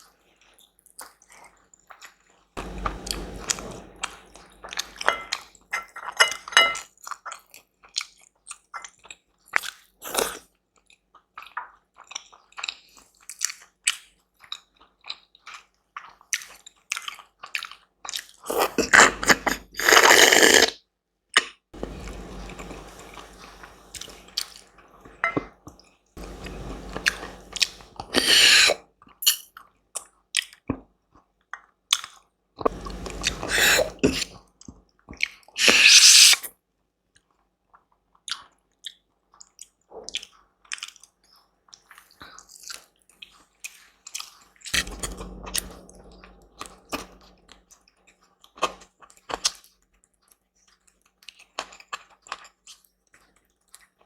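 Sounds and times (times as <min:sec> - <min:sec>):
chewing and biting food: 0:37.7 - 0:44.3.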